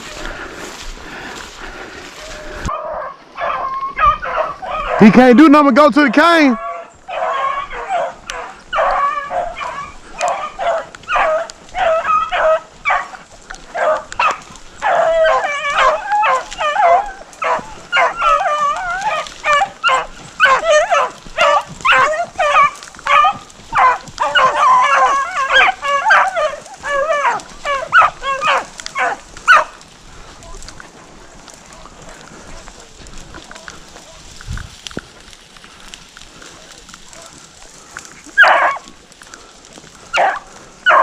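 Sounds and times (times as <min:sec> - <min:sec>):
hounds bawling and yipping: 0:00.0 - 0:05.1, 0:06.6 - 0:34.4, 0:35.1 - 0:41.0.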